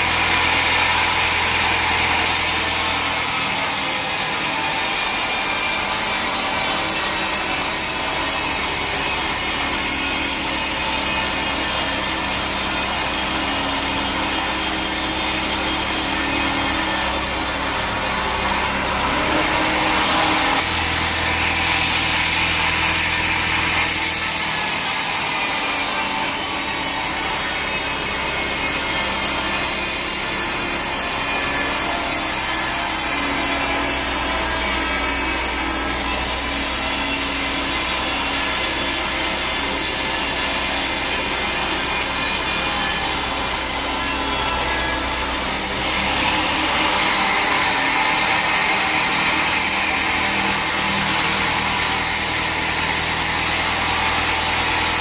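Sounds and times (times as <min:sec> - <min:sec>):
saw cutting through log: 0:00.0 - 0:55.0.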